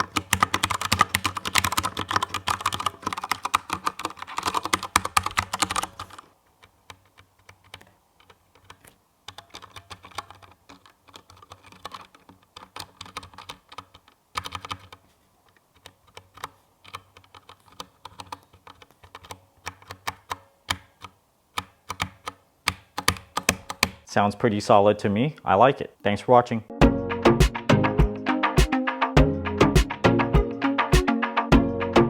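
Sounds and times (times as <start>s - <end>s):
mechanical keyboard typing: 0.0s - 15.0s, 15.7s - 24.1s.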